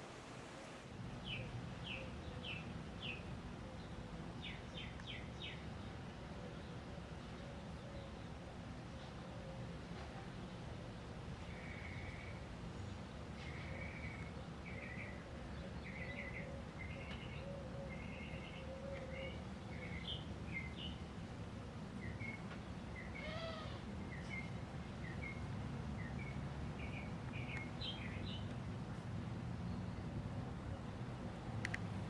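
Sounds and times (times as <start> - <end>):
birds chirping and singing: 13.4 - 21.0, 26.0 - 28.5.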